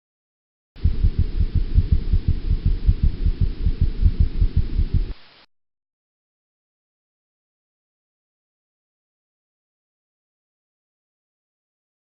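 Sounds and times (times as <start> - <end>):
low heartbeat thumps: 0.8 - 5.2.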